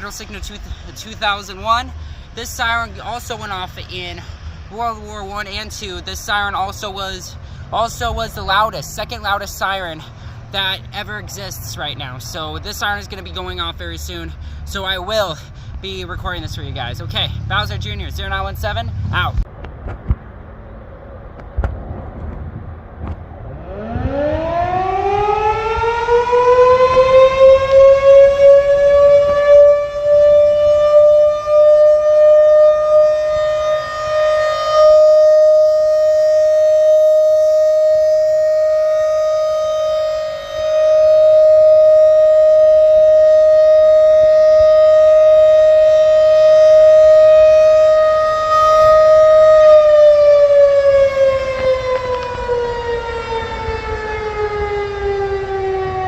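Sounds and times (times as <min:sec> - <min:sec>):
tornado siren winding: 0:23.5 - 0:56.0.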